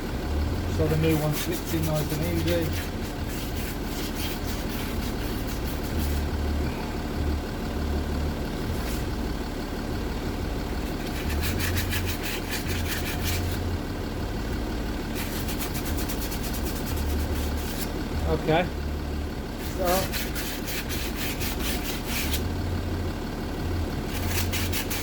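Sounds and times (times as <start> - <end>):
steady low hum: 0.0 - 25.0
quick rasping strokes: 0.9 - 6.4, 8.7 - 9.1, 10.9 - 13.7, 15.1 - 18.0, 19.6 - 22.5, 24.1 - 25.0.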